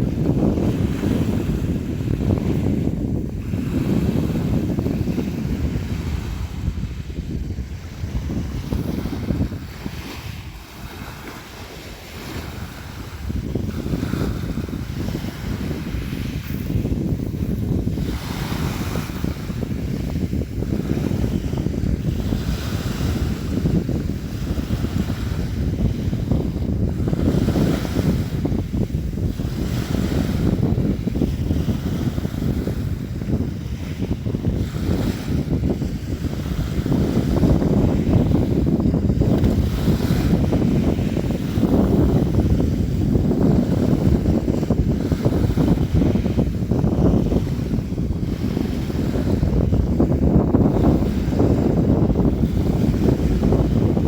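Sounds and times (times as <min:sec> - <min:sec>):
sea waves splashing: 0:00.0 - 0:54.0
wind rumble on microphone: 0:00.0 - 0:54.0.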